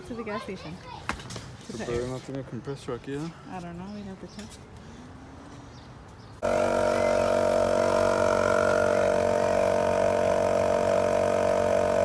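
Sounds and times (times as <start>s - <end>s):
air compressor motor hum: 6.4s - 12.0s.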